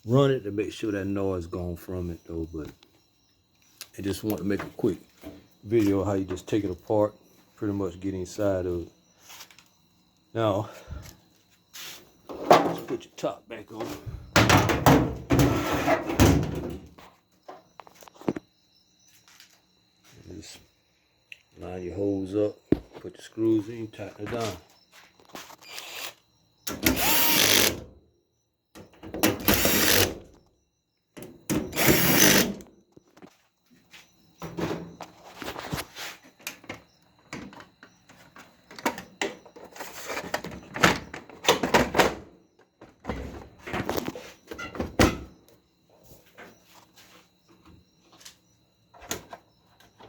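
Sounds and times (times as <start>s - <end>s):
power drill driving screws: 25.6s - 27.8s, 29.4s - 30.2s, 31.7s - 32.6s.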